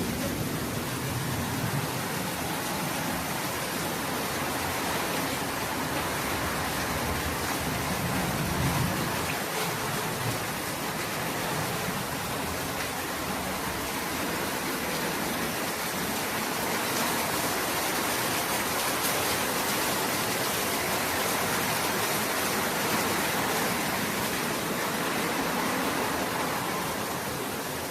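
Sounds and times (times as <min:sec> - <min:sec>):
rain: 0:00.0 - 0:27.9.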